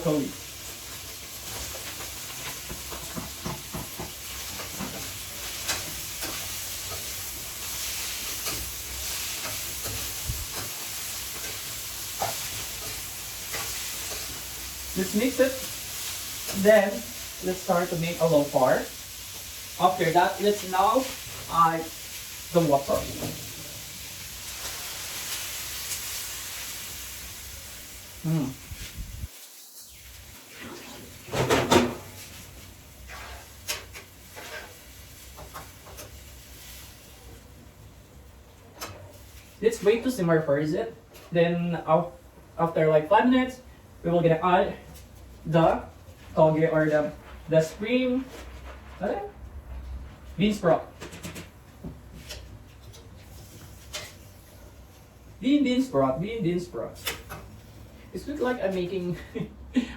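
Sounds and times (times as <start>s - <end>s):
food sizzling in a hot pan: 0.0s - 38.4s, 39.1s - 40.1s
utensil scraping a pan: 33.0s - 36.2s.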